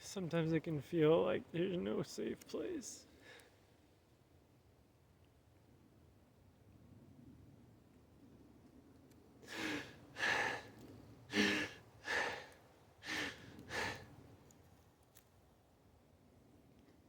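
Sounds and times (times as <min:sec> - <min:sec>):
person breathing deeply: 0:09.5 - 0:14.1.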